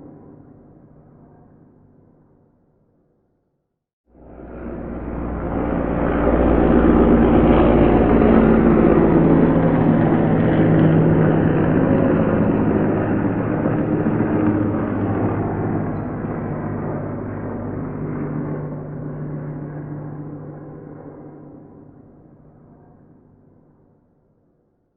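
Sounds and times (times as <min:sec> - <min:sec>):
helicopter flying past: 0:04.1 - 0:24.0.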